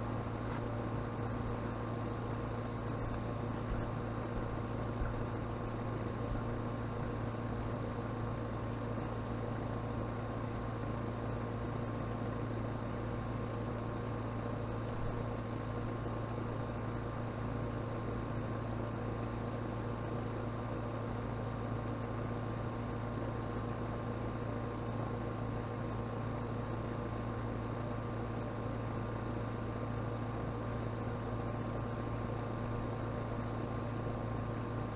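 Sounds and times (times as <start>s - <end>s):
low mechanical hum: 0.0s - 34.9s.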